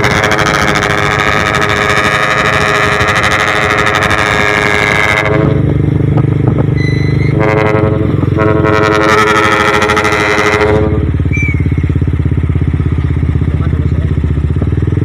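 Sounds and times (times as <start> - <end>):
truck air horns blaring: 0.0 - 5.8, 6.7 - 12.0.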